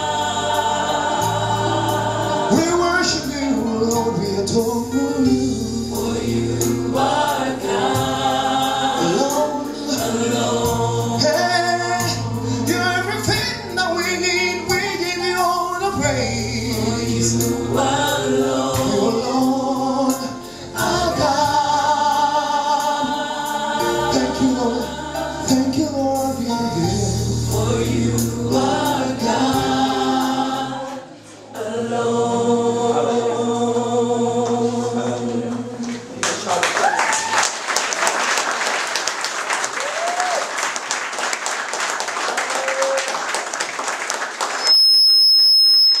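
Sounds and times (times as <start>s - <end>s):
choir singing gospel music: 0.0s - 36.6s
congregation applauding: 35.9s - 45.1s
cheering: 36.5s - 38.6s, 39.4s - 40.9s, 42.1s - 43.6s
loud high-pitched beep: 44.6s - 46.0s.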